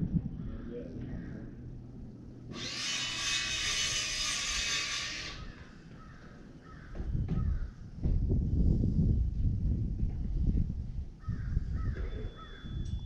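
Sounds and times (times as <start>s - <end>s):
fishing reel whirring: 2.5s - 5.6s.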